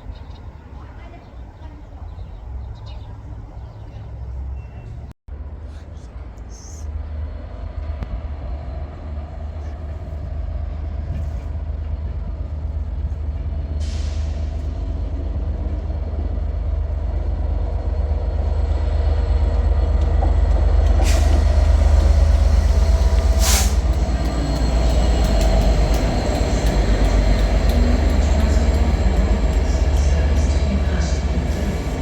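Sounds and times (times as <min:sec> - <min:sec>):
diesel train rumbling: 0:00.0 - 0:32.0
air hissing: 0:21.0 - 0:24.2.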